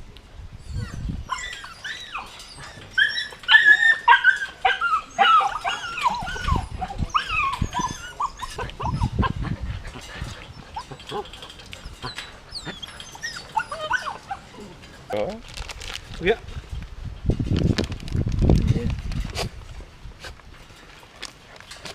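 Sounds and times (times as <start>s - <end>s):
puppies yipping and whining: 0.6s - 15.2s.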